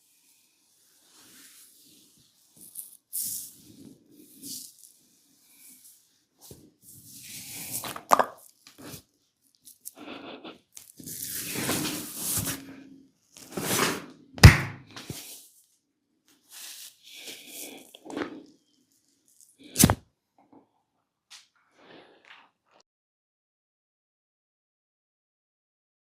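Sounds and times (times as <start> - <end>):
hands rubbing over skin: 9.7 - 12.7
sharp loud snap: 14.4 - 15.1.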